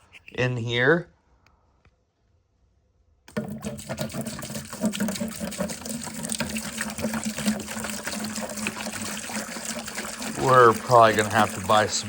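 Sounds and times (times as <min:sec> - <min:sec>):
liquid pouring into a bucket: 0:03.3 - 0:12.0.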